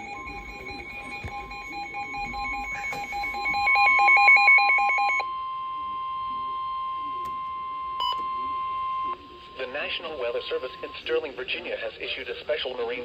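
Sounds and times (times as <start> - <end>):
rapid alternating electronic beeps: 0.0 - 5.2
steady warning alarm tone: 0.0 - 11.7.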